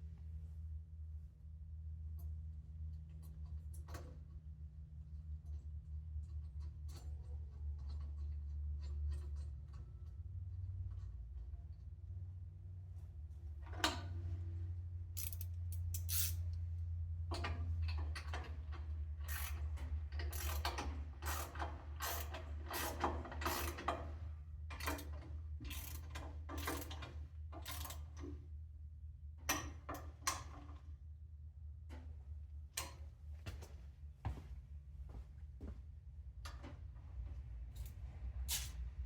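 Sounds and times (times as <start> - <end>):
ratchet wrench clicking: 15.2 - 16.4, 19.3 - 19.6, 20.2 - 23.8, 25.7 - 27.0
steady low hum: 30.1 - 39.0.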